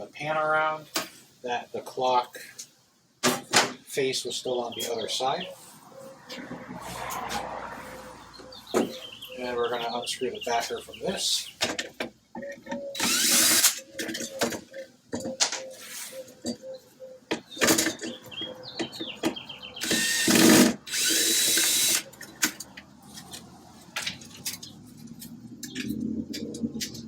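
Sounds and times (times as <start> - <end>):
cordless drill whirring: 13.0 - 13.8, 19.8 - 22.0.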